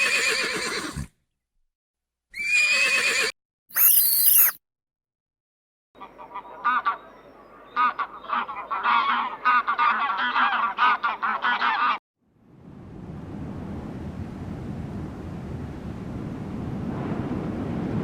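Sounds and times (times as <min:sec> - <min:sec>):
fowl honking chorus: 0:07.8 - 0:12.0.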